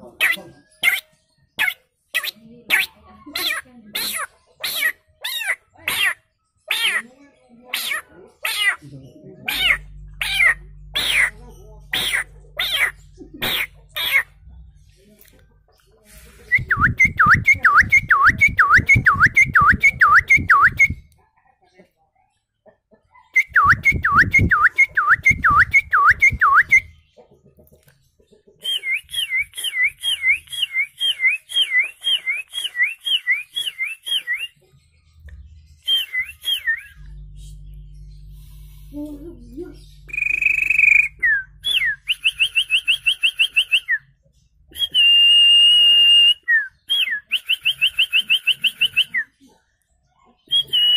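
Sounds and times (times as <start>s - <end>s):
man whistling bird calls: 16.6s - 21.1s, 23.4s - 26.9s, 28.6s - 34.6s, 35.8s - 37.1s, 40.1s - 44.1s, 44.7s - 49.3s, 50.5s - 50.9s.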